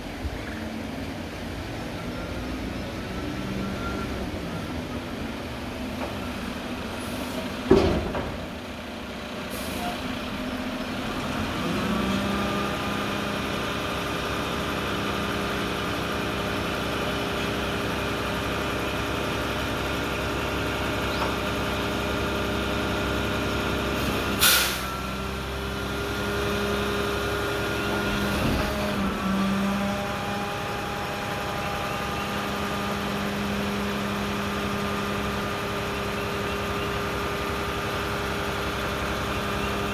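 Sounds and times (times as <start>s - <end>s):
diesel truck engine running: 0.0s - 39.9s
air brake hiss: 9.5s - 10.0s, 24.0s - 25.0s.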